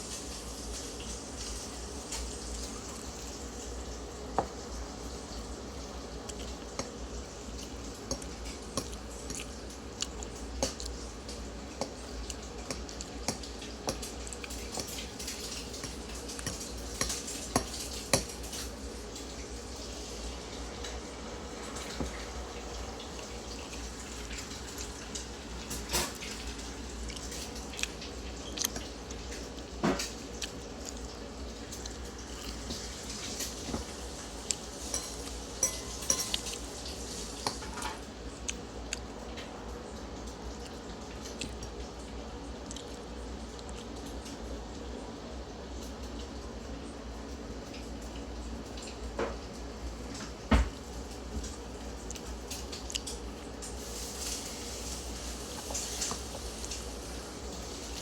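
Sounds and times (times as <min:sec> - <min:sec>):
low background hum: 0:00.0 - 0:58.0
cutlery clinking on plates: 0:34.8 - 0:36.6.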